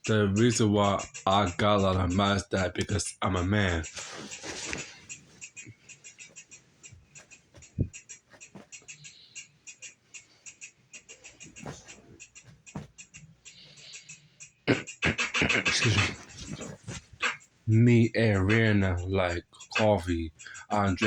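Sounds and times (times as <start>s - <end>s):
voice-like sound: 14.7s - 17.0s.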